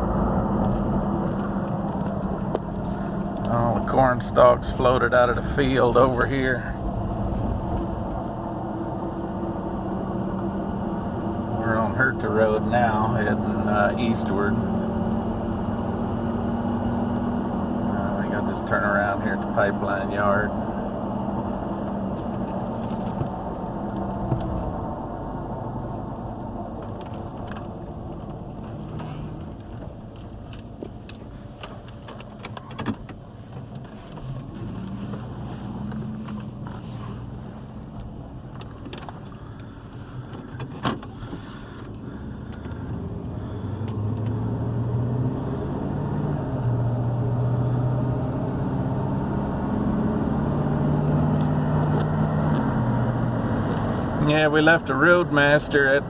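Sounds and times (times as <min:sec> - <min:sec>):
car engine and road noise: 0:00.0 - 0:56.0.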